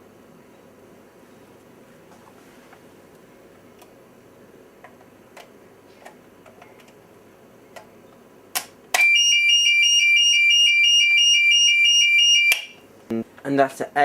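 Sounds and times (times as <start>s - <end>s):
two-tone fire alarm sounder: 9.0s - 12.8s.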